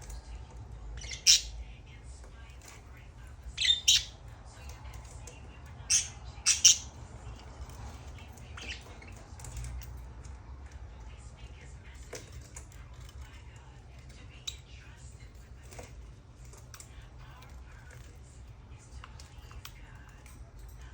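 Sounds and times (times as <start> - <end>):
soft bird chirps: 0.9 - 1.7, 3.5 - 4.8, 5.6 - 9.8
budgerigar squawking: 5.9 - 6.9.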